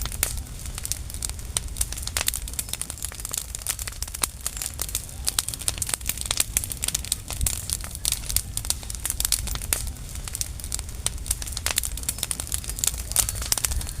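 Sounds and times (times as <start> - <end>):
dry leaves burning and crackling: 0.0 - 14.0
low steady rumble: 0.0 - 14.0.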